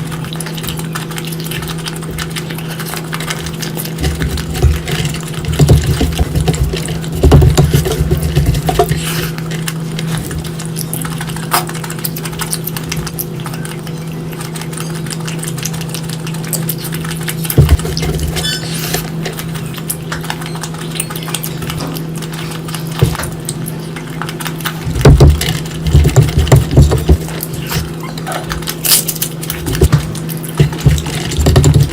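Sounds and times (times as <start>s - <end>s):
steady low hum: 0.0s - 31.9s
wet chewing: 0.0s - 31.9s
knocks and bumps: 4.0s - 9.1s, 24.8s - 28.0s, 29.6s - 31.9s.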